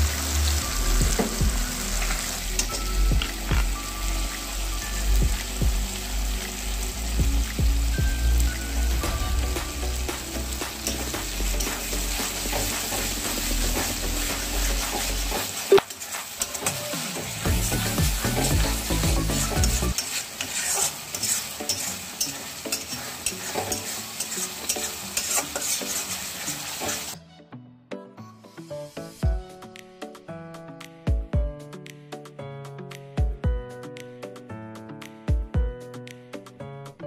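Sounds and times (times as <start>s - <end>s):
food sizzling in a frying pan: 0.0s - 27.2s
spoon scraping a pan: 13.8s - 16.8s, 19.4s - 27.2s.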